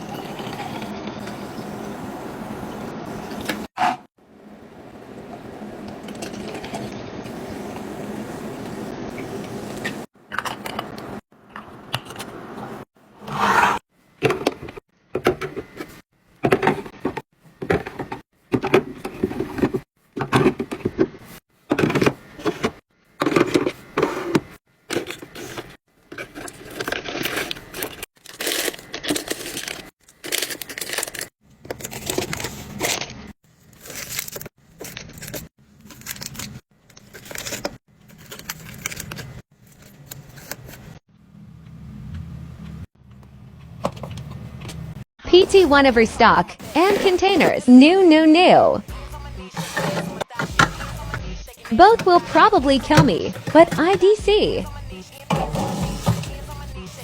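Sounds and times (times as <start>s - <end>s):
packaging crinkling and tearing: 26.4s - 40.9s
scraping and clunks: 49.5s - 53.8s, 54.7s - 56.8s.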